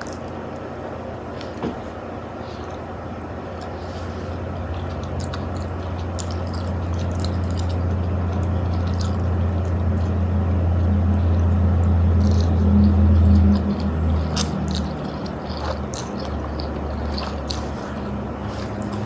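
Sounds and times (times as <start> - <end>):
steady low hum: 0.0 - 19.0
person slurping spaghetti: 12.2 - 19.0.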